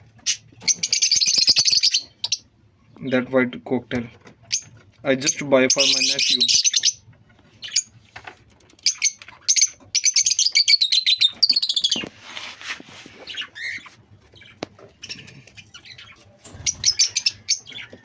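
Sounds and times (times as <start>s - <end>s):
caged birds chirping: 0.0s - 18.0s.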